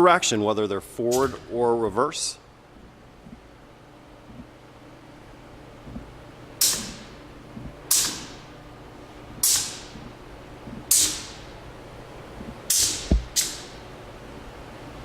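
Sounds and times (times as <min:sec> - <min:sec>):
pneumatic exhaust air hiss: 0:06.6 - 0:07.2, 0:07.9 - 0:08.4, 0:09.4 - 0:10.0, 0:10.9 - 0:11.5, 0:12.7 - 0:13.8.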